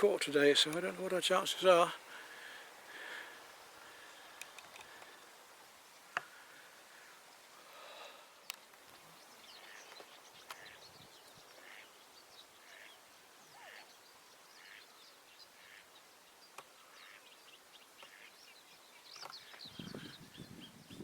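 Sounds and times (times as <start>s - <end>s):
bird calls and chirps: 7.8s - 21.0s.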